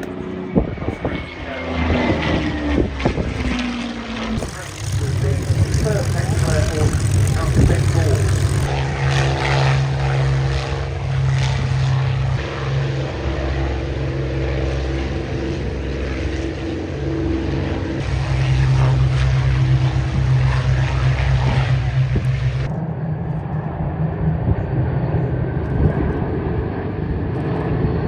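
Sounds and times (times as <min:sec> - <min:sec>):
propeller aircraft engine drone: 0:00.0 - 0:28.0
wind noise on microphone: 0:00.4 - 0:10.6, 0:18.0 - 0:28.0.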